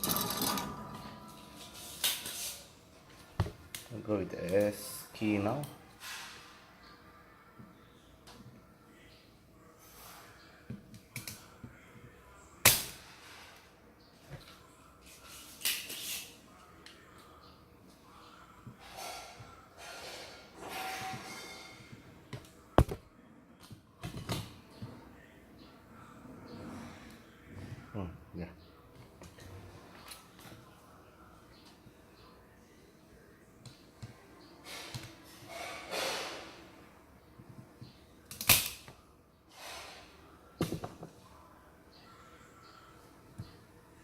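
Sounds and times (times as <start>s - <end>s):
soft scraping and rubbing: 0.0s - 2.9s, 18.7s - 22.2s.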